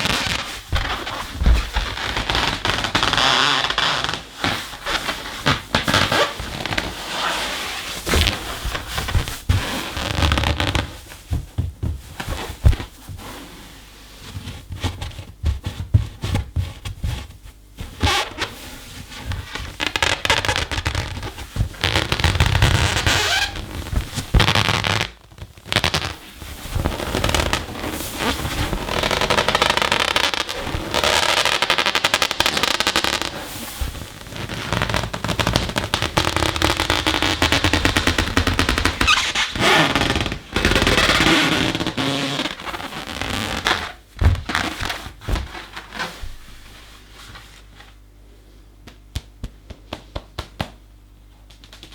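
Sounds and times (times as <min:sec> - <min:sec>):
rubber balloon squeaking: 0:00.0 - 0:11.2, 0:17.9 - 0:46.4.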